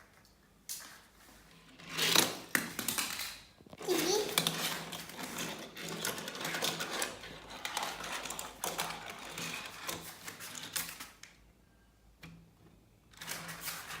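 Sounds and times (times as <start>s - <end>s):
plastic toy pieces clattering: 1.8s - 11.2s.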